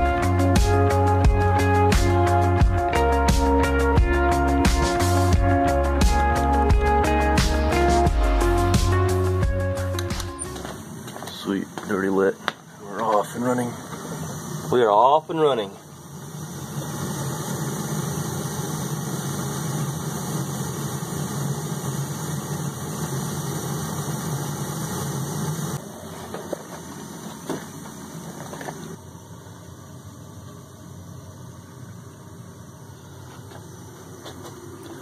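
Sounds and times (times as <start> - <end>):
mechanical motor hum: 0.0 - 35.0.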